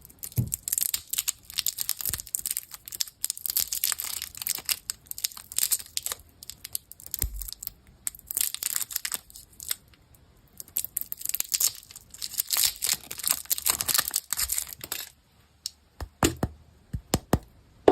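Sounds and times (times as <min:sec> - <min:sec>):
candy wrappers crinkling: 0:00.0 - 0:15.8.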